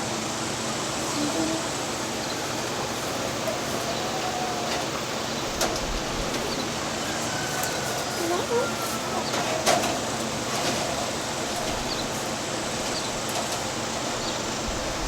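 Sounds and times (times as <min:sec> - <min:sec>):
outdoor hiss: 0:00.0 - 0:15.0
faint bird calls: 0:01.0 - 0:09.7.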